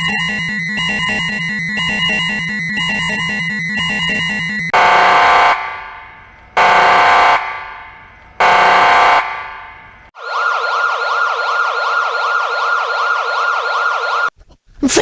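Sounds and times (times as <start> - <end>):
siren wailing: 0.0 - 7.8, 8.4 - 9.6, 10.2 - 14.3
loud alarm horn blasts: 0.0 - 10.0.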